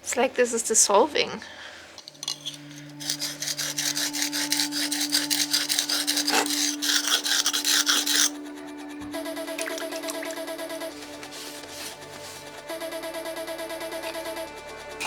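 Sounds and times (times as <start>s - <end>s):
background music: 0.0s - 15.0s
knife scraping on whetstone: 2.0s - 8.5s, 10.9s - 12.5s.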